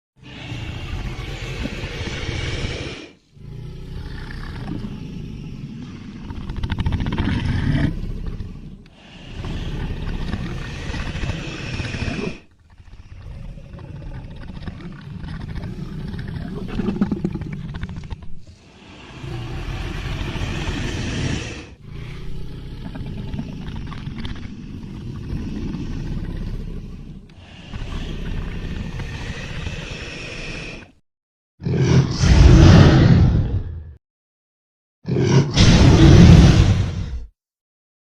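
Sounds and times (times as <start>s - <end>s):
deep creature growl: 0.2s - 31.0s, 31.6s - 34.0s, 35.0s - 37.4s.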